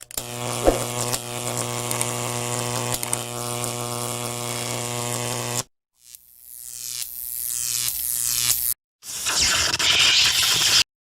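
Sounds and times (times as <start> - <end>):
electric buzzing with crackling: 0.1 - 8.7.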